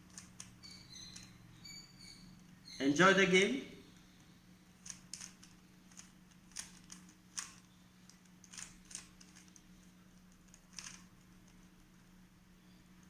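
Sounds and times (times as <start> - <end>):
steady low hum: 0.0 - 13.0
plastic puzzle cube clicks: 4.8 - 9.6, 10.3 - 11.6.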